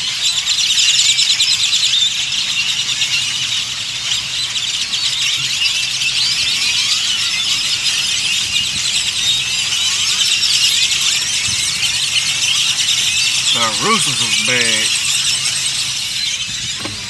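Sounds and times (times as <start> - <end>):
flock of birds calling: 7.8 - 17.0.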